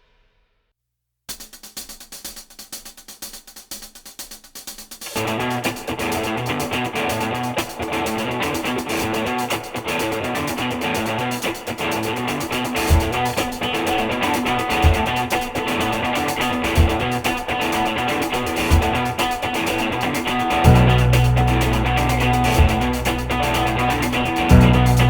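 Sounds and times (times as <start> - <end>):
guitar background music: 5.1 - 25.0
deep low beat: 14.7 - 15.3, 16.7 - 17.3, 18.6 - 25.0.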